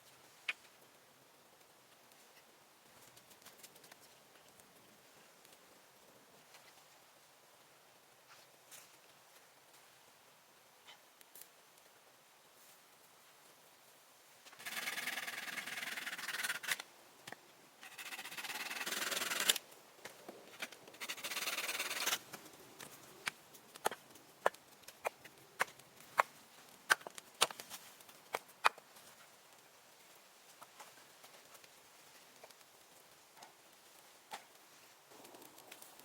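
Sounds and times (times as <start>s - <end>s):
rasping strokes on wood: 14.6s - 16.8s, 17.8s - 19.6s, 21.0s - 22.2s.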